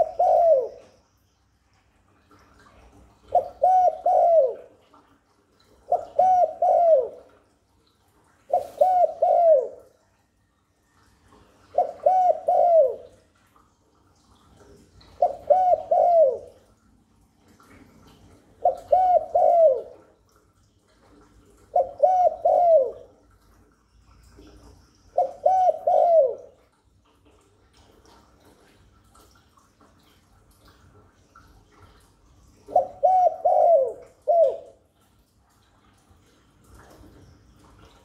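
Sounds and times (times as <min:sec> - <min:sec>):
dove cooing: 0:00.0 - 0:01.0, 0:03.3 - 0:04.8, 0:05.9 - 0:07.4, 0:08.5 - 0:10.0, 0:11.6 - 0:13.2, 0:15.2 - 0:16.6, 0:18.6 - 0:20.1, 0:21.7 - 0:23.1, 0:25.2 - 0:26.6, 0:32.6 - 0:34.8.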